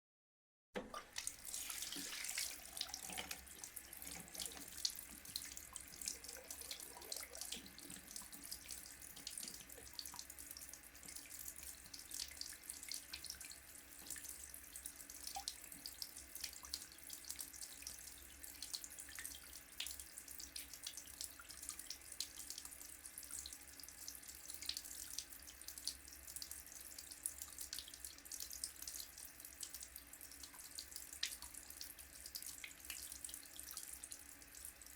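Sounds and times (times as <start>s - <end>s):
tap water running into sink: 0.8s - 18.0s.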